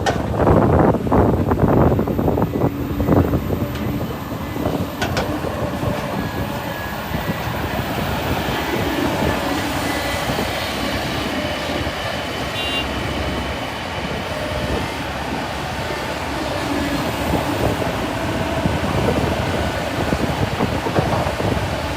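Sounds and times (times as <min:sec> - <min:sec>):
excavator diesel engine rumble: 0:00.0 - 0:21.9.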